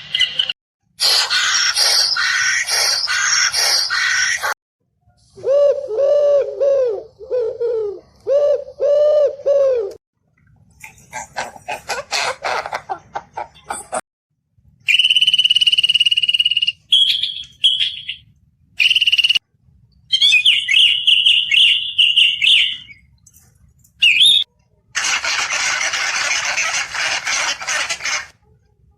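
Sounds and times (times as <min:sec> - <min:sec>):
whistled and trilled bird calls: 0:00.0 - 0:04.5, 0:14.8 - 0:19.4, 0:20.0 - 0:23.1, 0:24.0 - 0:24.5
rapid chattering animal calls: 0:01.0 - 0:04.6, 0:25.0 - 0:28.4.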